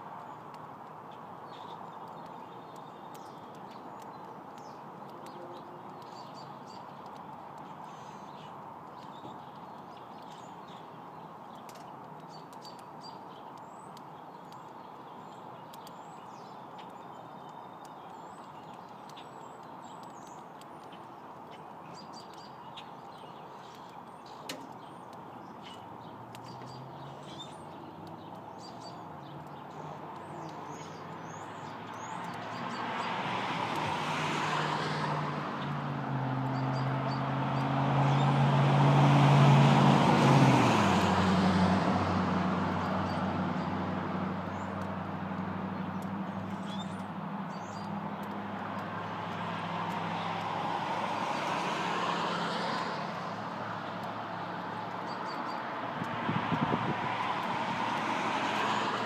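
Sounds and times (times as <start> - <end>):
small birds chirping: 0.1 - 38.6, 42.7 - 59.0
passing traffic: 18.1 - 59.0
road vehicle passing: 29.2 - 59.0.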